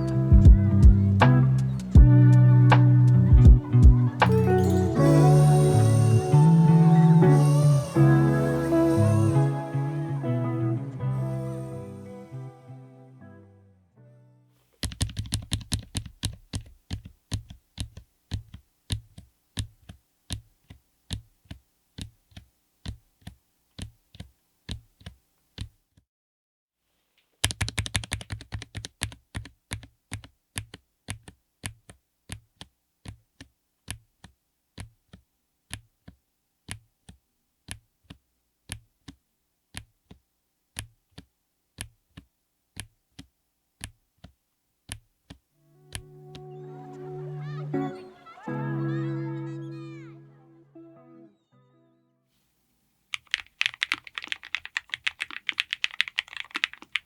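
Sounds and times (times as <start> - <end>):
mechanical keyboard typing: 14.8 - 25.7, 27.4 - 33.2, 53.1 - 57.0.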